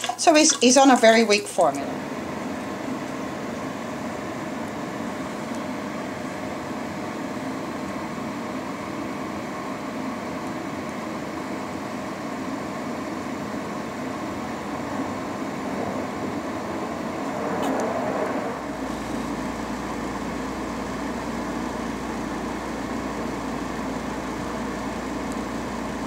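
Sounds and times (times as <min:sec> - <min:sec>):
faint constant hum: 0:00.0 - 0:26.0
steady droning noise: 0:12.6 - 0:26.0.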